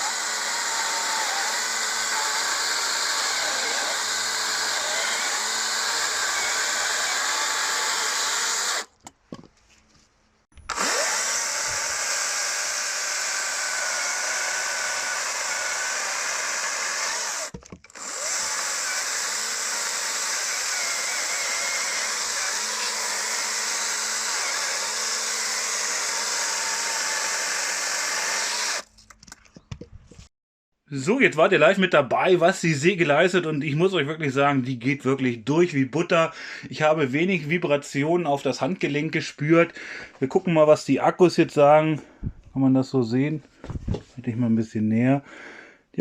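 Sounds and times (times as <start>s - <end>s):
chainsaw cutting wood: 0.0s - 9.0s, 10.6s - 28.9s.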